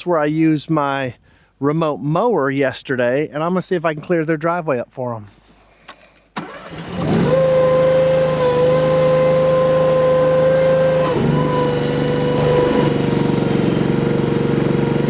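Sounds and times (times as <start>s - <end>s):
engine revving: 6.4s - 15.0s
hydraulic whine: 6.4s - 15.0s.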